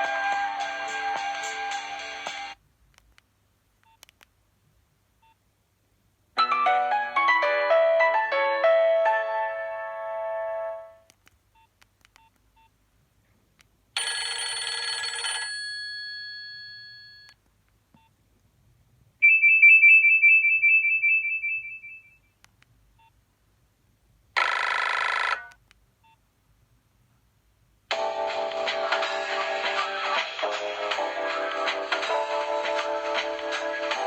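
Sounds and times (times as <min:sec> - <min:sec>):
mobile phone ringtone melody: 0:00.0 - 0:02.6, 0:14.0 - 0:15.8, 0:27.9 - 0:34.0.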